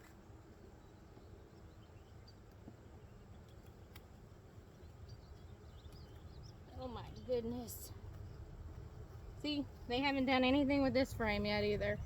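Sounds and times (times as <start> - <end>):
honeybees humming: 0.0 - 12.0.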